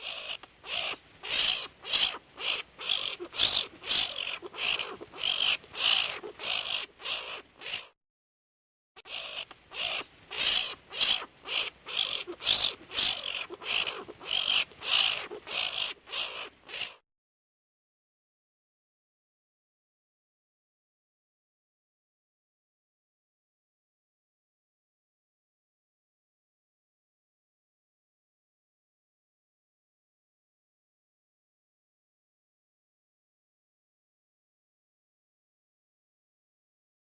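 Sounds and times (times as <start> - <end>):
animal high-pitched chirps: 0.0 - 8.0, 9.0 - 17.0.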